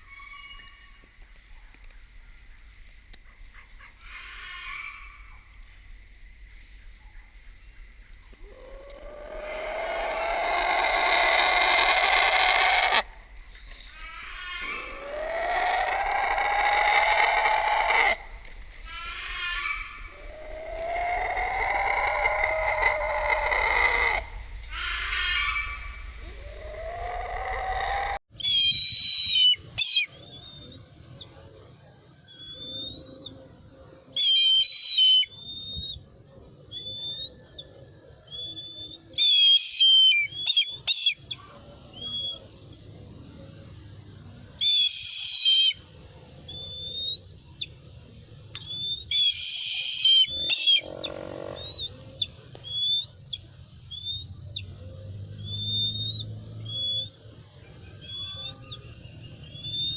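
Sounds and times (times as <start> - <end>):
eagle shrill call: 0.0 - 0.9, 4.0 - 5.2, 13.9 - 18.2, 18.8 - 31.2, 34.2 - 36.0, 38.3 - 42.8, 44.6 - 45.8, 48.6 - 54.6
eagle whistled notes: 42.0 - 42.8, 55.4 - 57.2.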